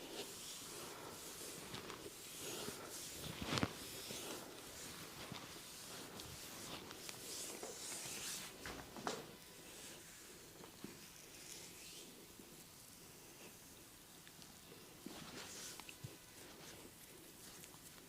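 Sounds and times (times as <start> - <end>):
oiled hands rubbing skin: 0.0 - 18.0.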